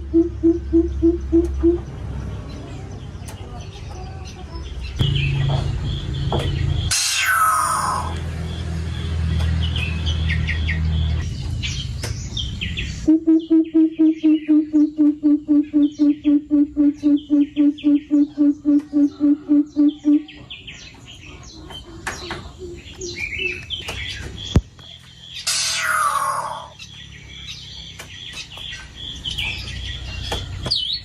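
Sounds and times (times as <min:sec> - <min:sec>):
small birds chirping: 0:00.0 - 0:31.0
low rumble: 0:05.0 - 0:11.8.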